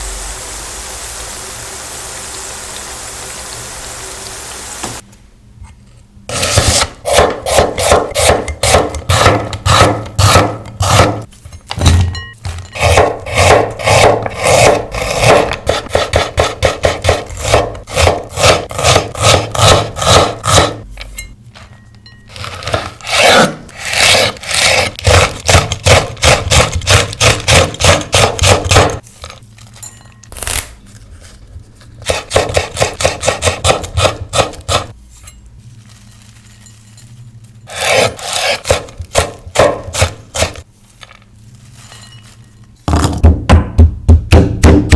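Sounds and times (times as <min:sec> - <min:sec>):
steady hiss: 0:00.0 - 0:05.0.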